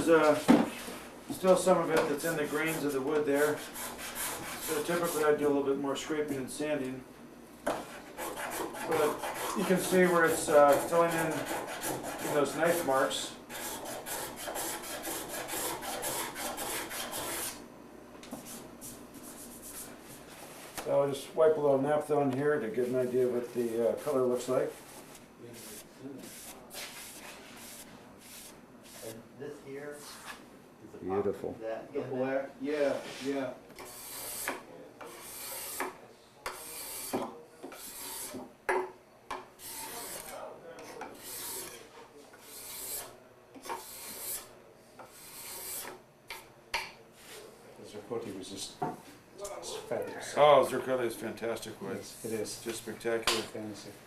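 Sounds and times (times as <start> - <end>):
rasping strokes on wood: 2.4 - 5.3, 7.9 - 17.6, 33.8 - 38.4, 39.6 - 40.4, 41.0 - 41.8, 42.4 - 43.1, 43.7 - 46.0
abrasive scraping on wood: 33.0 - 38.4.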